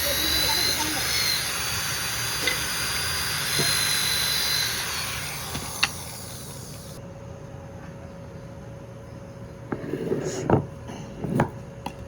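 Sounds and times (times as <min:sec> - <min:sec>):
power tool whining: 0:00.0 - 0:07.0.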